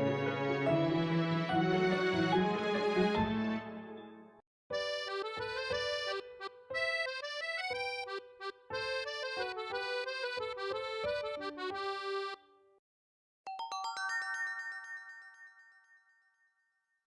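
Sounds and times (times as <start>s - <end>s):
phone ringtone melody: 13.5s - 16.4s.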